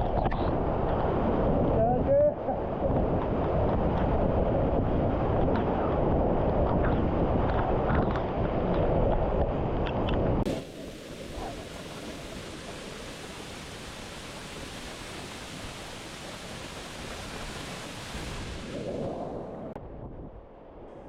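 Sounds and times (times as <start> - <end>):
wind buffeting microphone: 0.0 - 21.0
waterfall rushing water: 10.5 - 19.3.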